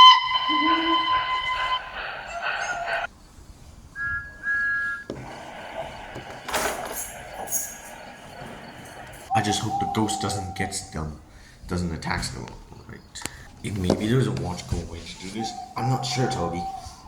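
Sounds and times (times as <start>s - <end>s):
steam hiss: 0.0s - 3.1s, 5.1s - 9.8s
steam locomotive whistle: 0.0s - 3.1s, 4.0s - 10.9s.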